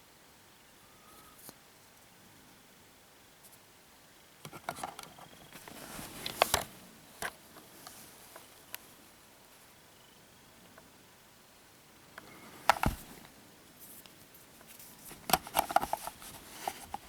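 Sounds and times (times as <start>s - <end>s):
plastic camcorder parts clicking: 6.2s - 7.3s, 12.7s - 13.0s, 15.2s - 17.0s.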